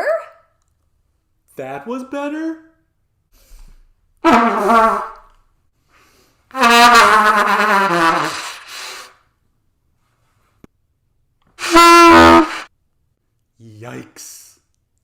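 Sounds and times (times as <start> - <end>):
trumpet blasts: 4.2 - 5.3, 6.5 - 8.9, 11.6 - 12.7.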